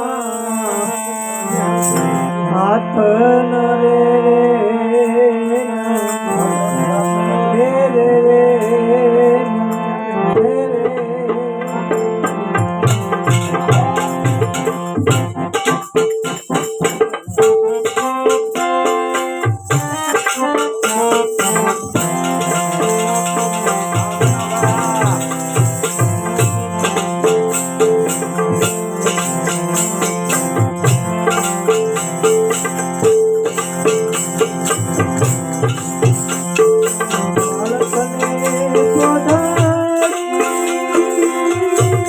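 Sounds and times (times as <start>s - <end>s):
jingling hand percussion: 0.0s - 2.5s, 5.1s - 7.8s, 11.6s - 42.0s
sustained melody line: 0.0s - 42.0s
drum strokes: 12.6s - 42.0s.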